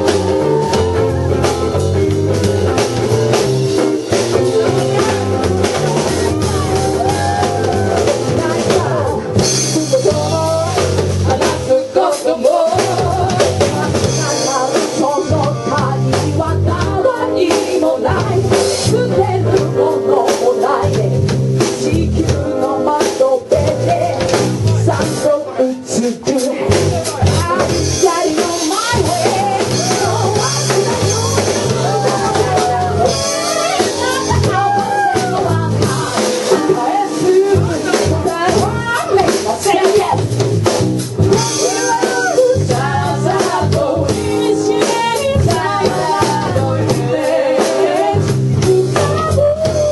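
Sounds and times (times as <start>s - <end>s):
wavering lead melody: 0.0s - 11.5s, 27.2s - 49.9s
bass line: 0.0s - 49.9s
drum kit steady beat: 0.0s - 49.9s
live rock band playing: 0.0s - 49.9s
person singing: 2.8s - 40.2s, 41.3s - 49.9s.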